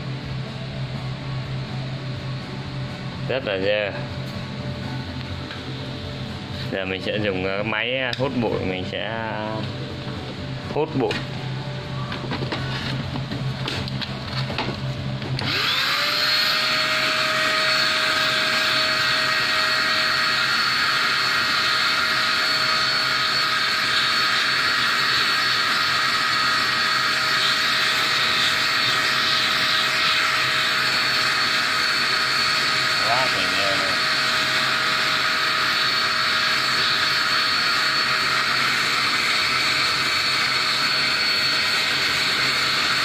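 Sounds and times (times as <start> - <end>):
vacuum cleaner motor whining: 11.9 - 43.0.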